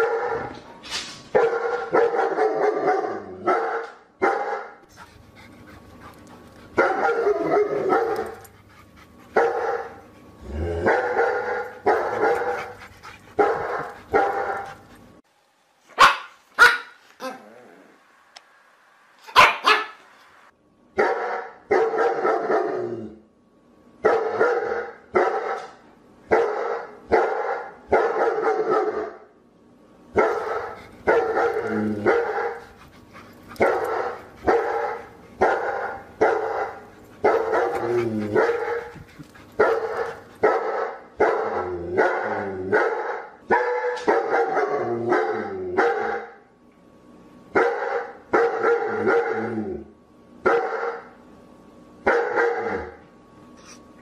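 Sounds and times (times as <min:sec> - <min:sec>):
dog barking: 0:00.0 - 0:00.5, 0:01.3 - 0:04.8, 0:06.8 - 0:08.4, 0:09.4 - 0:10.0, 0:10.8 - 0:12.7, 0:13.4 - 0:14.8, 0:16.0 - 0:17.0, 0:19.3 - 0:20.0, 0:21.0 - 0:22.7, 0:24.0 - 0:29.2, 0:30.2 - 0:32.7, 0:33.6 - 0:39.0, 0:39.6 - 0:46.4, 0:47.6 - 0:49.4, 0:50.4 - 0:51.1, 0:52.1 - 0:53.0.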